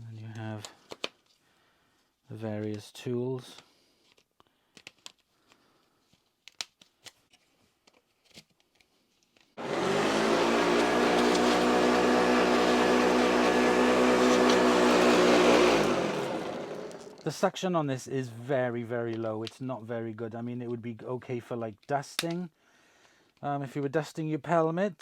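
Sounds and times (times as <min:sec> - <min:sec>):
clicks of vacuum attachments handled: 0:09.4 - 0:17.3
vacuum cleaner running: 0:09.6 - 0:17.2.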